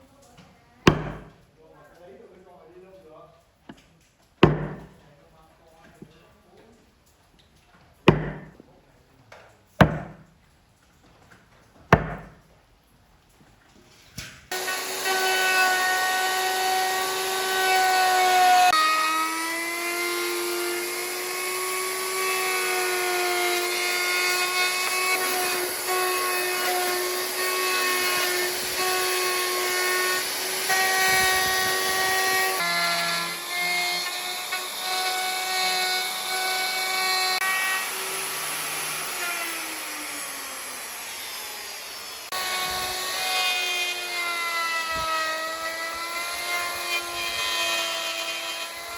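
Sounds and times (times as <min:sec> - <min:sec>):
power tool motor whining: 0:14.5 - 0:48.9.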